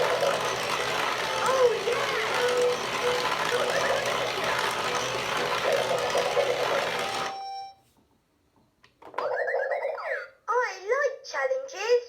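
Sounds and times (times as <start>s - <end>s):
toy vehicle motor noise: 0.0s - 7.4s
toy sound effects: 9.1s - 10.4s.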